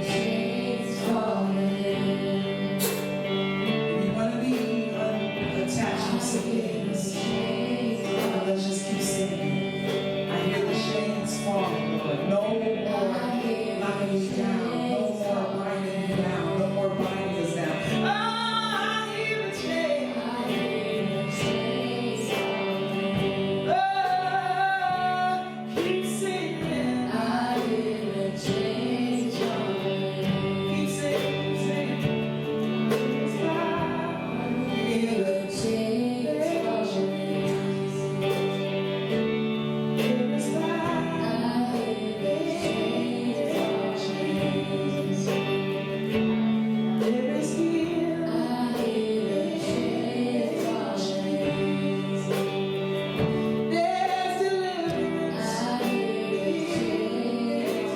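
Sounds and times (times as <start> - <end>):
guitar: 0.0 - 57.9
woman singing gospel: 0.0 - 57.9.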